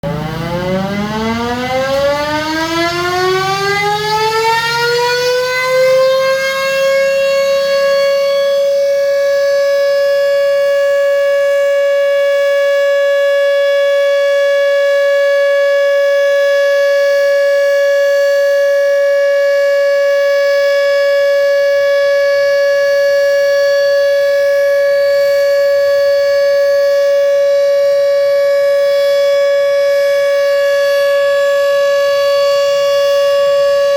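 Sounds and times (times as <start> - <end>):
siren winding up: 0.0 - 8.8.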